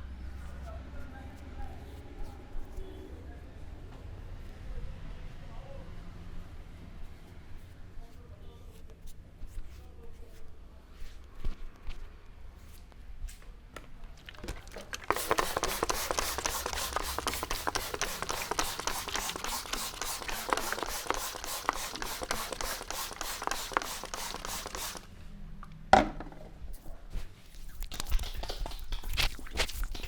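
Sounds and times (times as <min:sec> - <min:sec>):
hands rubbing hair: 0:15.0 - 0:25.1, 0:26.8 - 0:30.0.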